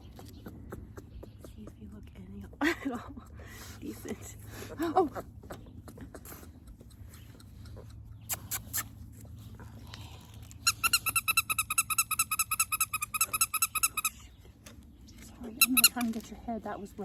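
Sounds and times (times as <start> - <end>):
squeaker high squeaks: 10.6 - 14.2, 15.6 - 16.1.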